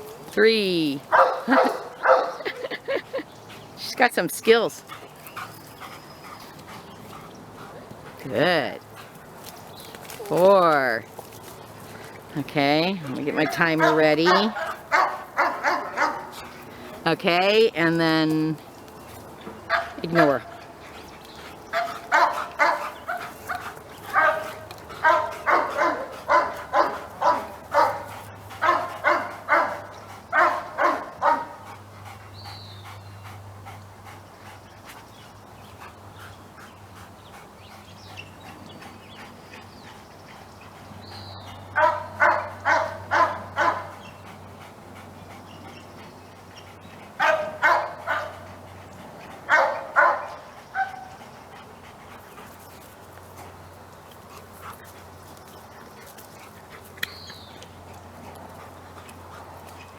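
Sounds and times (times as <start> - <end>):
dog barking: 1.1 - 2.4, 13.5 - 16.3, 19.7 - 20.5, 21.8 - 22.9, 23.5 - 24.4, 25.0 - 29.8, 30.4 - 31.6, 41.8 - 43.9, 47.2 - 48.4, 49.5 - 51.1.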